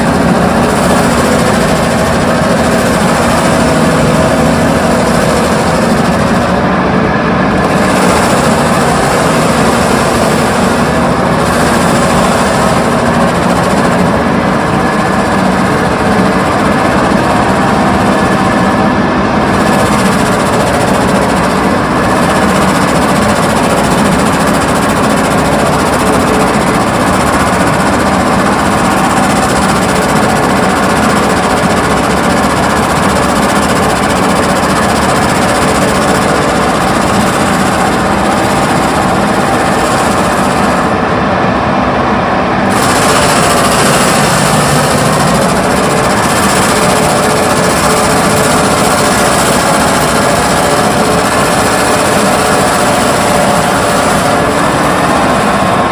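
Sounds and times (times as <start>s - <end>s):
excavator diesel engine running: 0.0s - 55.9s.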